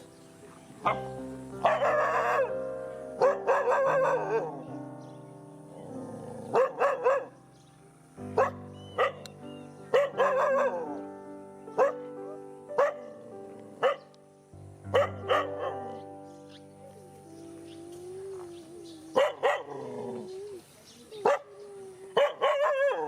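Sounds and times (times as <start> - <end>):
background music: 0.0 - 20.4
dogs barking: 0.5 - 4.8, 5.7 - 7.4, 8.3 - 11.1, 11.7 - 14.2, 14.9 - 17.0, 17.6 - 20.5, 21.1 - 23.0.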